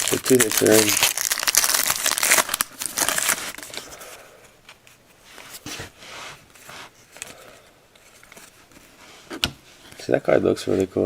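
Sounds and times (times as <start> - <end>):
plastic wrapper crinkling: 0.0 - 4.1
cards rustling: 0.0 - 5.7.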